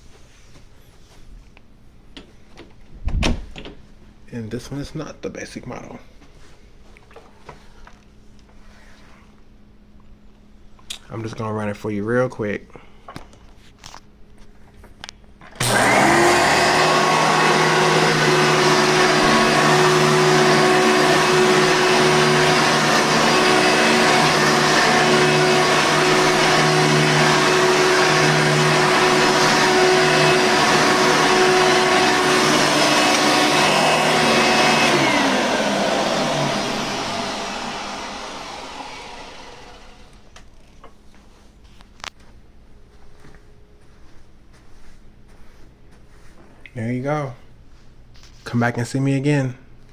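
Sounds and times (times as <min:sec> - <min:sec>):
vacuum cleaner spinning down: 0:15.5 - 0:40.4
vacuum cleaner motor whine: 0:15.5 - 0:40.5.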